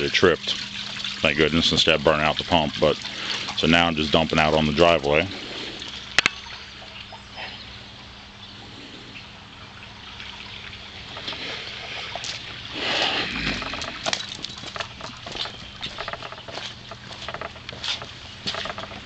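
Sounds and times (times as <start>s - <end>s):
water pouring from hose: 0.0s - 7.0s, 9.5s - 19.0s
clicks and pattering: 13.5s - 19.0s.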